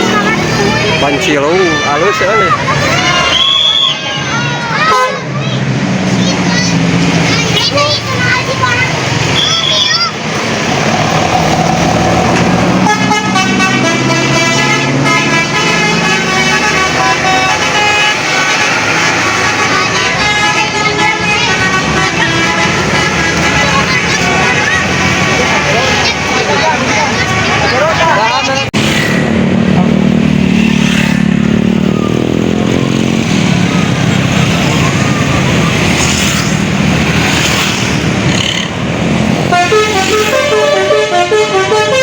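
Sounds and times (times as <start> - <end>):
multi-tone musical bus horn: 0.0 - 1.3, 4.8 - 5.3, 12.7 - 25.6, 26.4 - 28.2, 39.4 - 42.0
bus engine running: 0.0 - 30.5.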